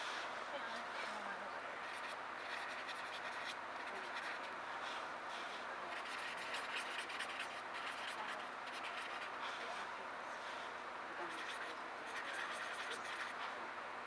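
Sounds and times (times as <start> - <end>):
pencil scratching on paper: 1.8 - 4.6, 5.9 - 9.6, 11.3 - 13.5.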